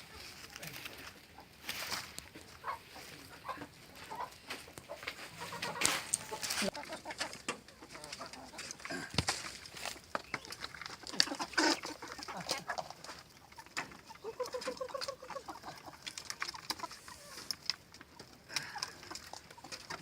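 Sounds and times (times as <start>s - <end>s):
chickens clucking: 0.0s - 20.0s
chicken drawn-out call: 1.8s - 9.0s, 10.6s - 17.6s.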